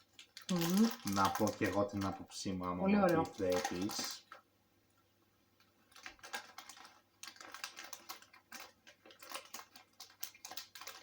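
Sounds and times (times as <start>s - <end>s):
cereal bar crunching: 5.9s - 11.0s.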